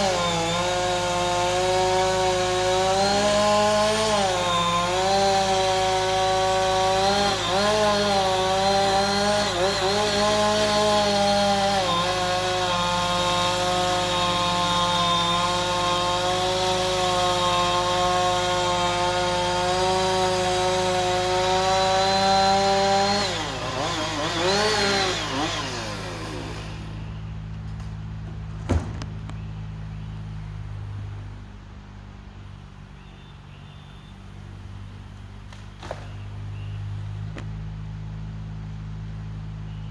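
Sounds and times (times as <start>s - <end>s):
chainsaw cutting wood: 0.0s - 29.5s, 35.4s - 36.4s.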